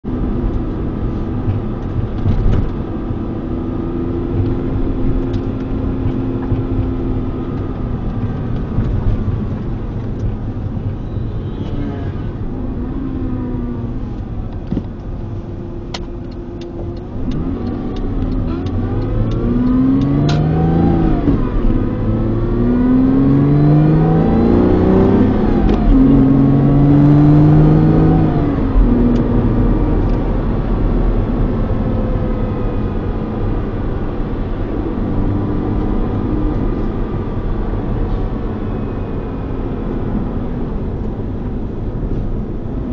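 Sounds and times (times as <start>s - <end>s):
car engine revving: 11.4s - 42.9s.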